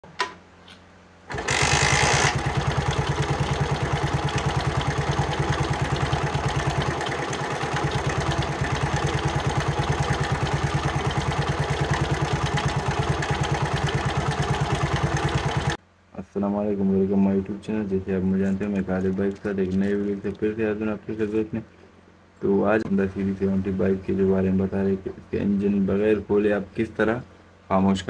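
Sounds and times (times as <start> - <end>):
motorcycle engine starting and idling: 1.3 - 15.8.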